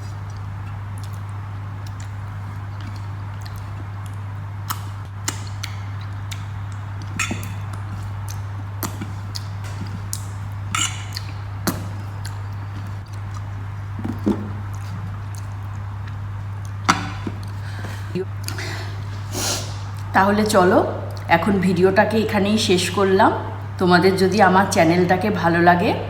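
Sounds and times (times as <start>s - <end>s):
steady low hum: 0.0s - 26.0s
eating clicks and clinks: 4.7s - 13.4s.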